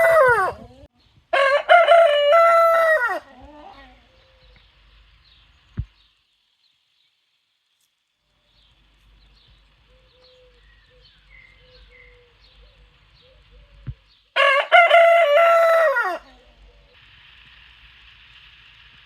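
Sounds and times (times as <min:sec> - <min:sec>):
rooster crowing: 0:00.0 - 0:00.6, 0:01.3 - 0:03.4, 0:14.4 - 0:16.5
faint bird chirps: 0:03.6 - 0:14.3.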